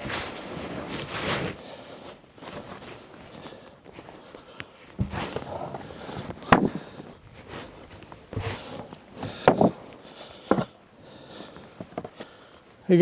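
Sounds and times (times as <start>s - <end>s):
footsteps: 5.0s - 10.8s.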